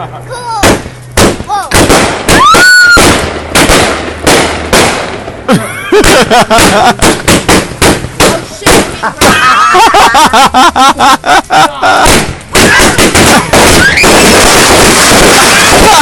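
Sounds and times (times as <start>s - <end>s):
whistling fireworks: 0.6s - 4.9s, 12.0s - 16.0s
fireworks bangs: 0.6s - 10.6s, 12.0s - 16.0s.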